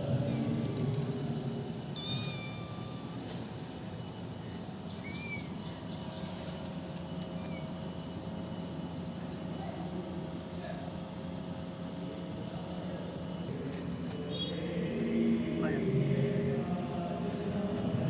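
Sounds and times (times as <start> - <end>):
kitten meowing: 1.9 - 3.2, 5.0 - 5.5.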